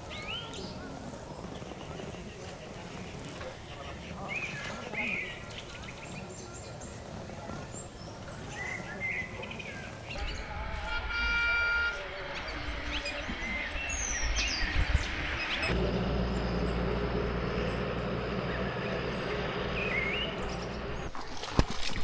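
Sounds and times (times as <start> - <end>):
bird chirps: 0.0 - 21.1
steady low rumble: 12.0 - 21.1.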